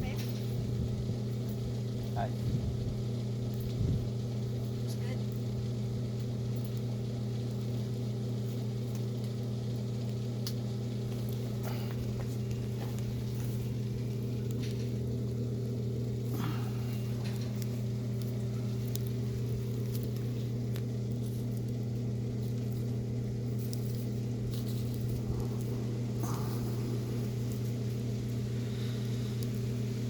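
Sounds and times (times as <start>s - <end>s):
steady low hum: 0.0s - 30.0s
wood fire crackling: 0.0s - 30.0s.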